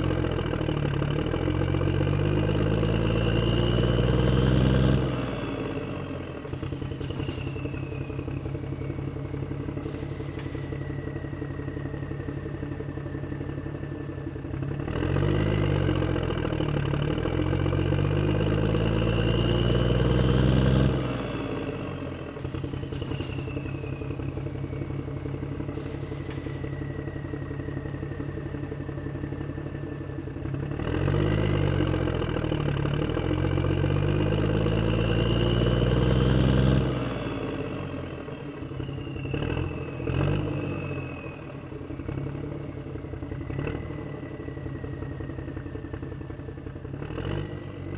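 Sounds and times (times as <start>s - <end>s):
engine revving: 0.0s - 47.9s.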